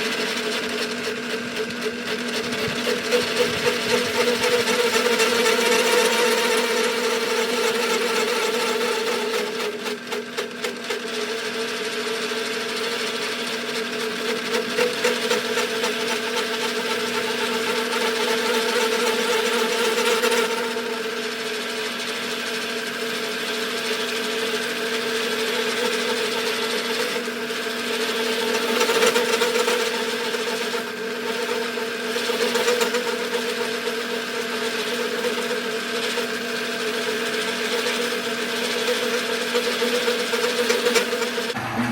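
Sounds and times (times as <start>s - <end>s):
metal lathe running: 0.0s - 15.8s, 35.6s - 41.9s
cutter scraping steel: 0.0s - 41.9s.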